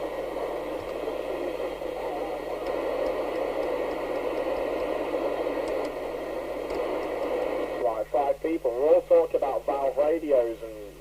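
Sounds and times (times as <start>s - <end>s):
radio static hiss: 0.0s - 11.0s.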